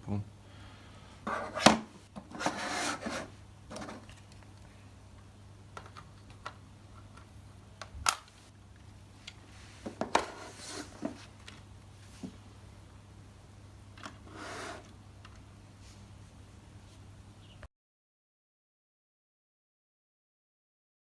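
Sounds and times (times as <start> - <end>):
plastic scraping and rubbing: 1.3 - 4.4.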